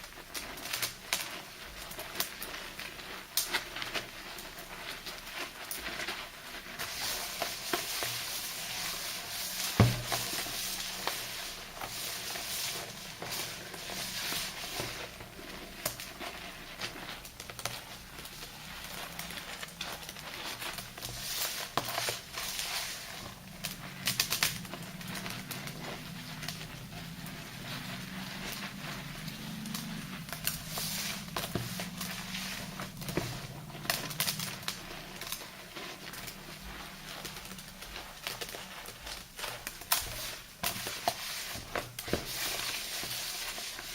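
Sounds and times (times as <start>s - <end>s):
wet squishing lather by hand: 0.3s - 43.9s
thump: 9.8s - 10.3s.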